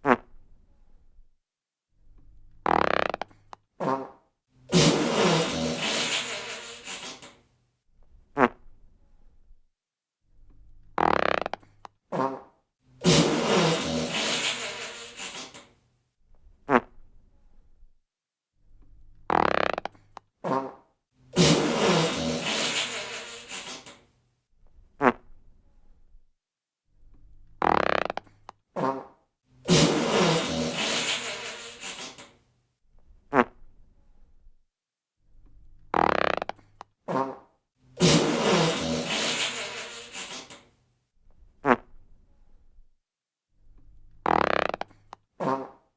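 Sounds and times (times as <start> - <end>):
fart sound effects: 0.0 - 0.3, 2.6 - 7.4, 8.4 - 8.6, 11.0 - 15.7, 16.7 - 17.0, 19.3 - 24.0, 25.0 - 25.3, 27.6 - 32.3, 33.3 - 33.6, 35.9 - 40.7, 41.6 - 41.9, 44.2 - 45.8.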